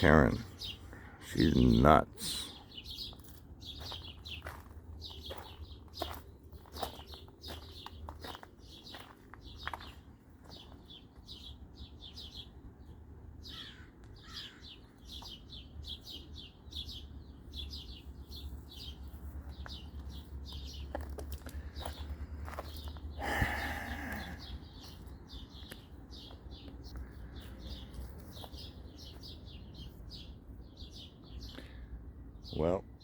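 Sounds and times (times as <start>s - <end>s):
small bird chirping: 1.4s - 23.2s.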